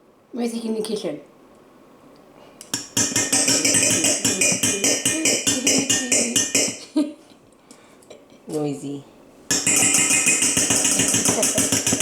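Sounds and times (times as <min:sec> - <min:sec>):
utensil clinking kitchenware: 0:02.7 - 0:06.8.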